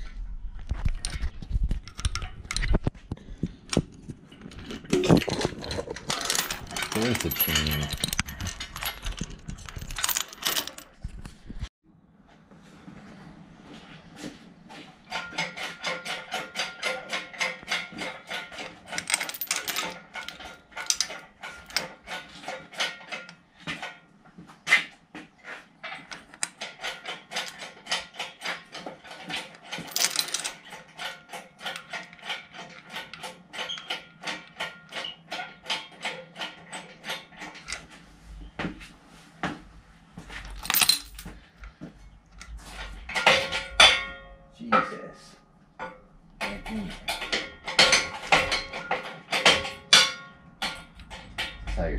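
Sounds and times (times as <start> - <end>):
steel chain clinking and rattling: 1.0 - 2.9, 4.2 - 11.1, 15.1 - 24.0, 25.8 - 37.8, 40.3 - 44.4, 45.8 - 51.9.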